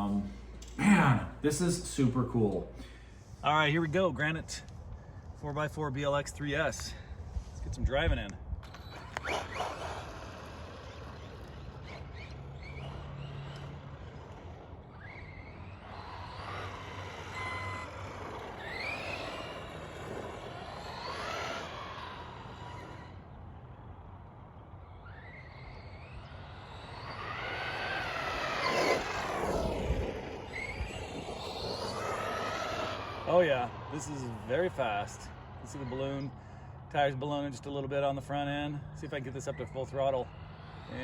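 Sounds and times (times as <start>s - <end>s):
electric motor whining: 8.0s - 41.0s.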